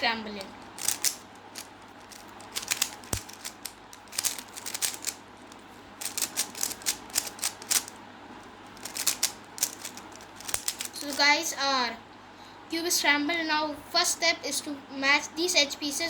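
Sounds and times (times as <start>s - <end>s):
puzzle cube clicking: 0.4s - 7.9s, 8.8s - 11.2s.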